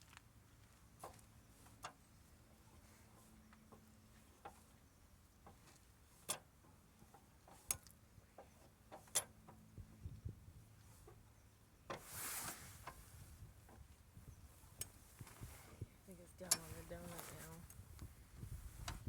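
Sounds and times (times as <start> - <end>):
scraping rustle: 11.9 - 13.4, 14.5 - 19.0.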